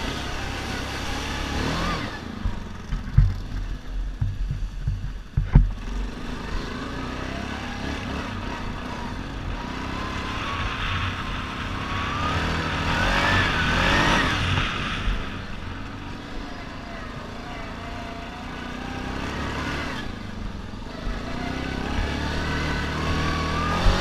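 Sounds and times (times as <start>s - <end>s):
atv engine revving: 0.0s - 24.0s
heavy irregular thumps: 2.4s - 5.8s.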